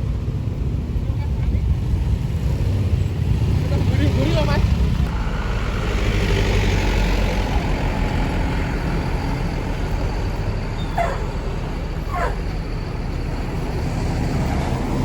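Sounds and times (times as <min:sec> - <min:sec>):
vehicle engine rumbling: 0:00.0 - 0:15.0
dog yelping: 0:10.8 - 0:12.7.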